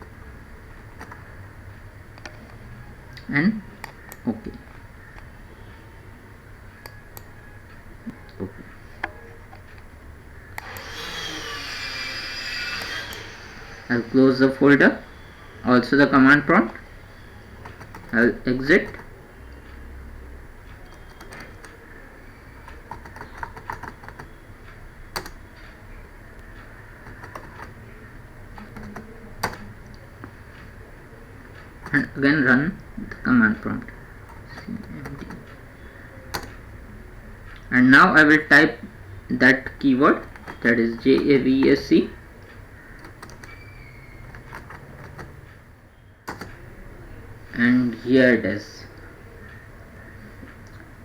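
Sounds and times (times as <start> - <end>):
computer mouse clicking: 0.8 - 1.5, 2.1 - 5.4, 6.8 - 13.3, 16.3 - 19.9, 20.6 - 37.7, 38.8 - 45.6, 46.2 - 47.6.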